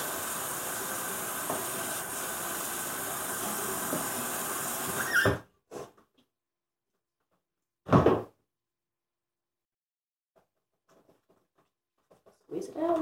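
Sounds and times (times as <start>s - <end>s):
tap water running: 0.0s - 5.4s.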